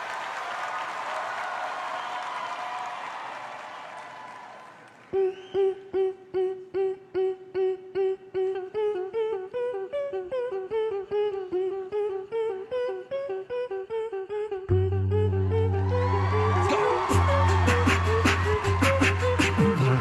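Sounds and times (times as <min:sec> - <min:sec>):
person singing clipped pitched notes: 0:05.1 - 0:20.0.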